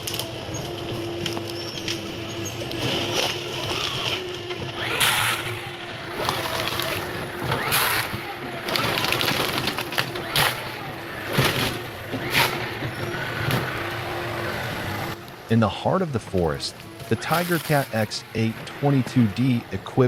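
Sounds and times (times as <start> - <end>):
wood cracking and rustling: 0.0 - 15.4
harvester engine humming: 0.0 - 20.0.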